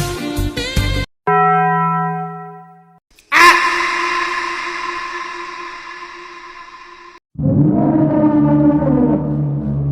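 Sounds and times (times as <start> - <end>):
higher gliding tone: 3.6 - 7.2
low droning tone: 4.1 - 8.1.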